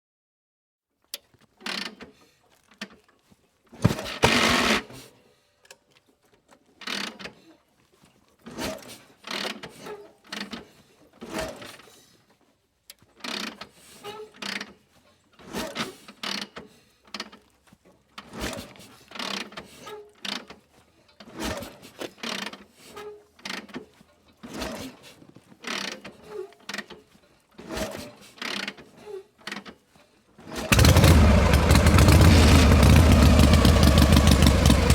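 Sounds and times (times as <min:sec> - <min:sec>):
gear lever clicking and clunking: 0:01.1 - 0:04.9, 0:18.2 - 0:29.8.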